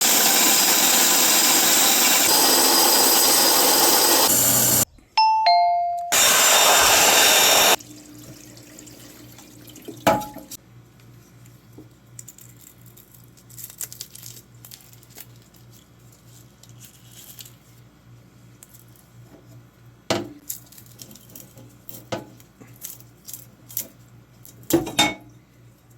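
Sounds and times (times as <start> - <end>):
two-note falling chime: 5.2 - 6.2.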